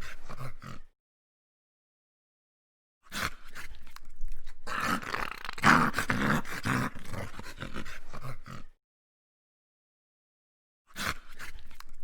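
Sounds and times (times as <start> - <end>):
dogs growling while fighting: 4.7 - 8.8.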